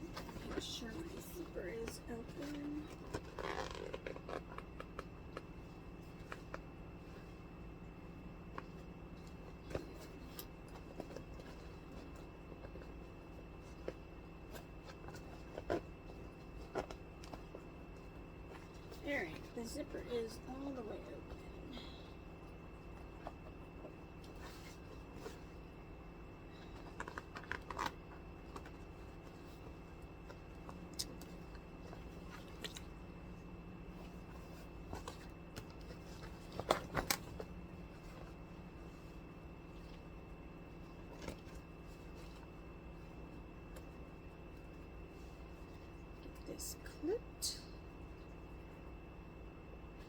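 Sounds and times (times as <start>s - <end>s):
faint steady hum: 0.0s - 50.0s
leather bag and zipper clicking: 2.8s - 5.5s.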